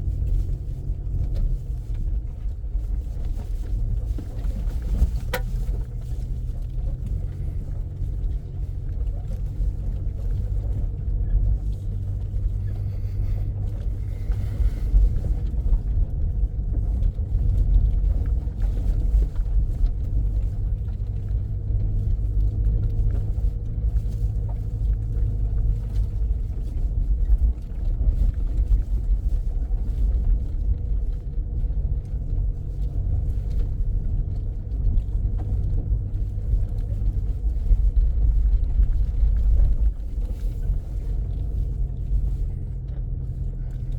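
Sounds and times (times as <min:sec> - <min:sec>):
vehicle rumble from inside: 0:00.0 - 0:43.9.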